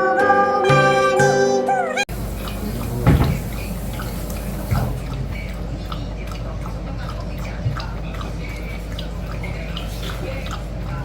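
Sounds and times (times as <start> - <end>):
water trickling and dripping: 2.1 - 6.4
steady low hum: 2.1 - 11.0.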